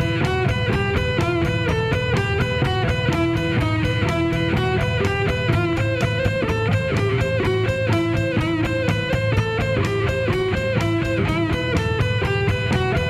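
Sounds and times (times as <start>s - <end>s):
instrumental rock music: 0.0s - 13.0s.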